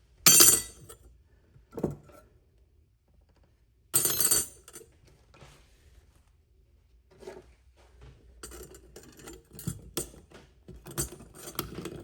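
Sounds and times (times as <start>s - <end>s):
metal tools clinking: 0.3s - 1.0s, 4.0s - 4.8s, 8.4s - 12.0s.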